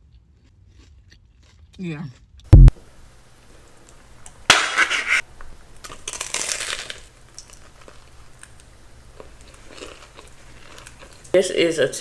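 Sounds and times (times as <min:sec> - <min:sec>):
chewing crunch: 0:00.0 - 0:02.7, 0:05.8 - 0:11.4
crunchy bite: 0:00.3 - 0:02.7, 0:05.8 - 0:11.3.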